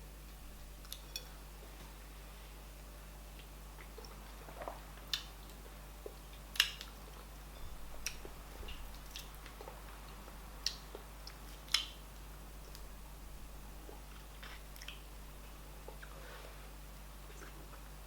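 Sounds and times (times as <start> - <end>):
quiet chewing: 0.8 - 2.0, 3.3 - 12.0, 13.8 - 16.6, 17.2 - 17.9.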